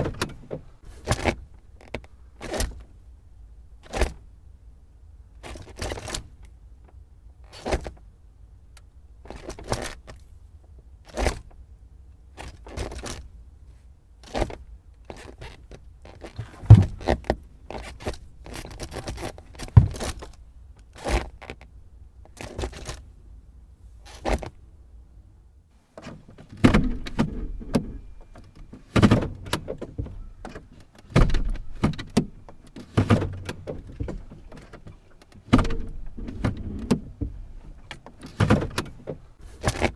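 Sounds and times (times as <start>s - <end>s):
gear lever clunks and clicks: 0.0s - 2.9s, 3.8s - 4.3s, 5.4s - 8.1s, 8.8s - 10.2s, 14.2s - 21.7s, 22.3s - 23.1s, 24.1s - 24.6s, 26.0s - 39.9s.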